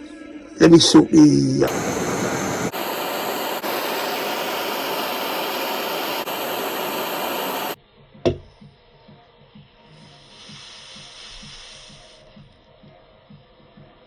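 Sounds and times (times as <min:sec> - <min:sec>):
machine air hissing: 0:01.6 - 0:07.8, 0:10.0 - 0:12.4.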